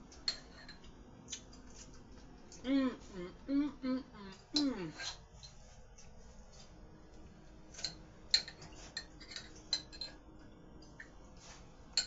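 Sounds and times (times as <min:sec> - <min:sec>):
utensil clinking against dish: 0:07.7 - 0:10.2.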